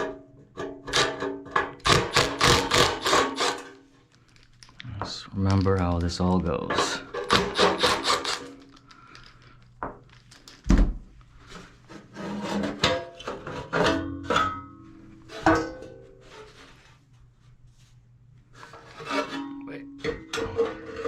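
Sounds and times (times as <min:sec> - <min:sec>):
metal parts knocking and clunking: 0:05.4 - 0:11.0.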